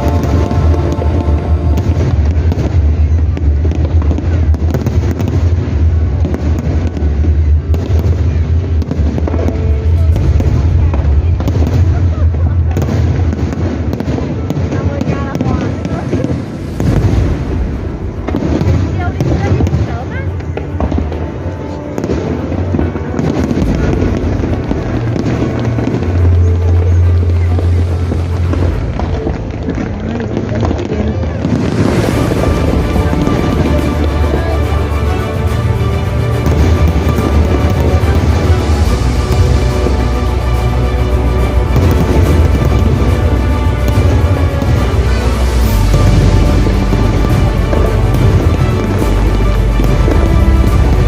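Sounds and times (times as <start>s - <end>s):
music with deep bass notes: 0.0s - 14.6s, 20.5s - 51.0s
deep rumble: 0.0s - 51.0s
fireworks bangs and crackles: 0.0s - 51.0s.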